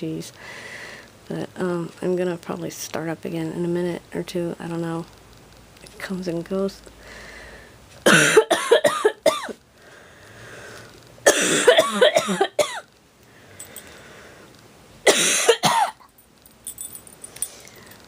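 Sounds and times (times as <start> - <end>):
person chest coughing: 8.1 - 9.6, 11.3 - 12.8, 15.1 - 16.0.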